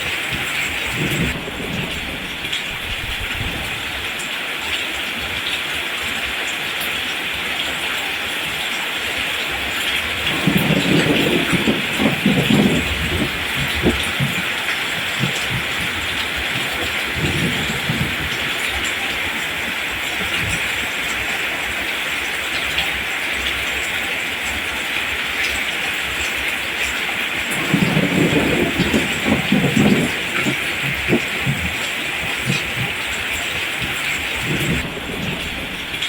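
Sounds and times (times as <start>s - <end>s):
rain falling on plants: 0.0s - 36.0s.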